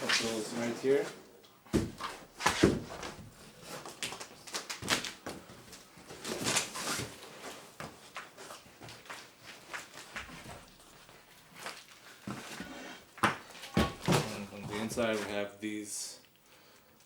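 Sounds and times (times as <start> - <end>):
cardboard scraping and rustling: 1.8 - 4.6, 5.5 - 9.0, 11.6 - 15.4.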